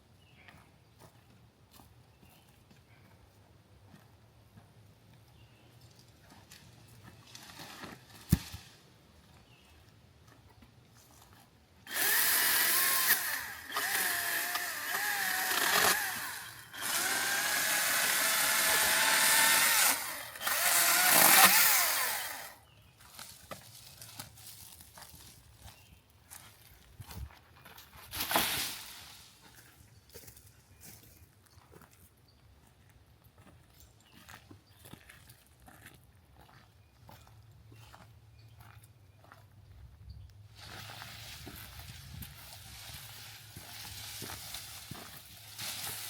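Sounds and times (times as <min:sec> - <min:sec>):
electric saw cutting wood: 0:11.9 - 0:22.6.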